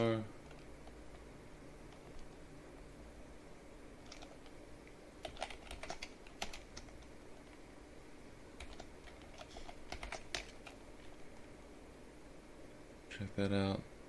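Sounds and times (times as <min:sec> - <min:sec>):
computer keyboard typing: 0:00.4 - 0:01.3, 0:04.0 - 0:04.6, 0:05.2 - 0:07.6, 0:08.6 - 0:11.5.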